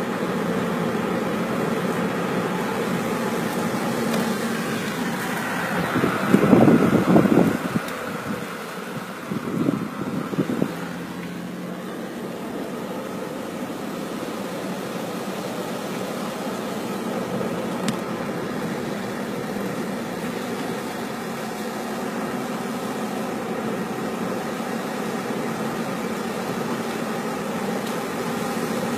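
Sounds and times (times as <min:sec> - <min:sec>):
car road and engine noise: 0:00.0 - 0:28.9.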